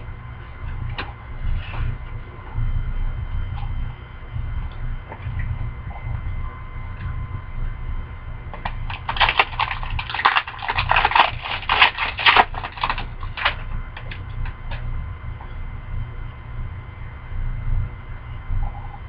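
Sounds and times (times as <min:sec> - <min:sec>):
steady low hum: 0:00.0 - 0:19.0
trading cards and wrappers rustling: 0:08.7 - 0:13.6.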